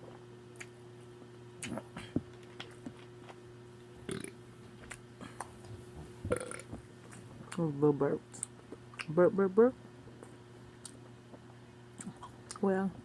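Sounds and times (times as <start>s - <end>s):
small burps: 4.1s - 4.4s, 6.3s - 6.7s.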